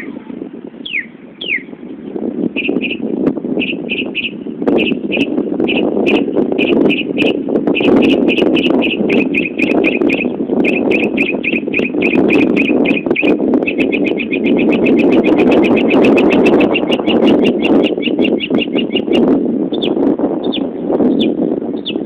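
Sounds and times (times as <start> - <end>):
mockingbird whistled notes: 0.8 - 1.7.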